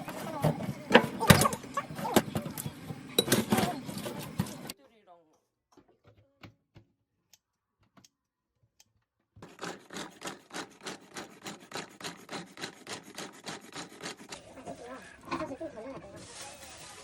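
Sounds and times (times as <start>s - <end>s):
fast scraping strokes: 9.4s - 15.2s.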